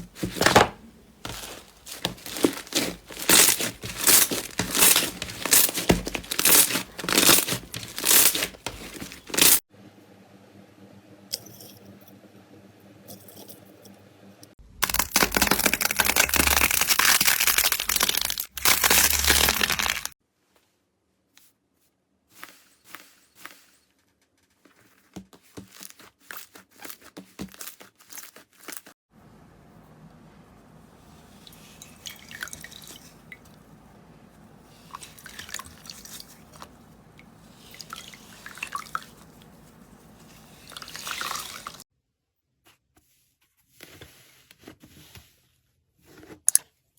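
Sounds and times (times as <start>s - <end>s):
crunchy slime crackling and popping: 1.3s - 9.6s, 14.8s - 20.1s.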